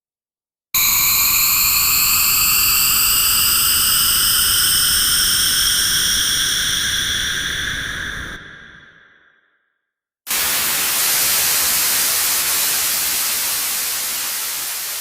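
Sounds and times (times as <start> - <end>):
synthesized white-noise sweep: 10.3 - 15.0.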